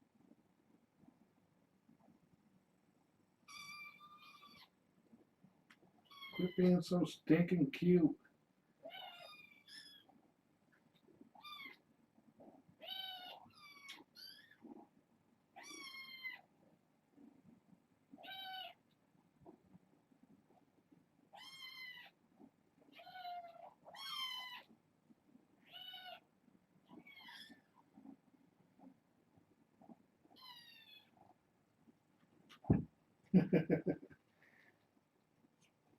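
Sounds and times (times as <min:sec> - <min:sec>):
kittens meowing: 0:06.1 - 0:06.6, 0:08.8 - 0:10.1, 0:12.8 - 0:14.8.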